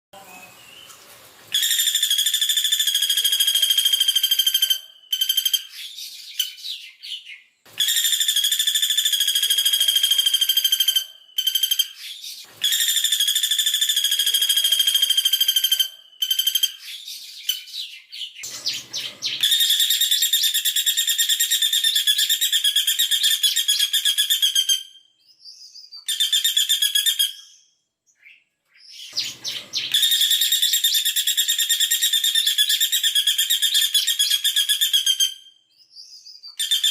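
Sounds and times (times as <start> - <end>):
woodpecker rattling trills: 18.4 - 24.6, 29.2 - 35.1.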